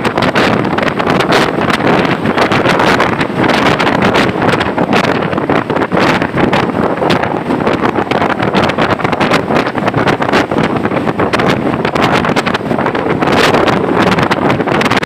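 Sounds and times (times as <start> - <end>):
rain and road noise: 0.0 - 15.0
wind buffeting microphone: 0.0 - 15.0.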